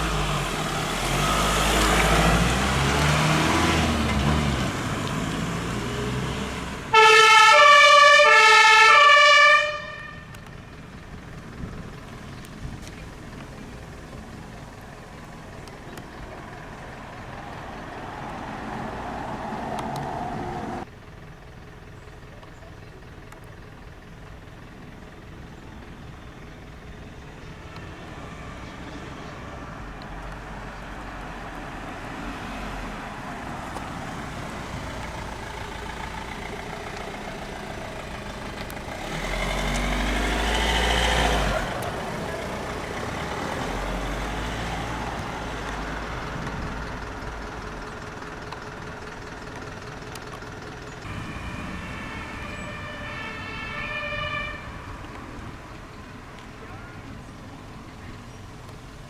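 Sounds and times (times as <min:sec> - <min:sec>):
heavy vehicle driving past: 0:00.0 - 0:20.9, 0:27.4 - 0:49.4, 0:50.8 - 0:58.5
outdoor vehicle noise: 0:00.0 - 0:59.0.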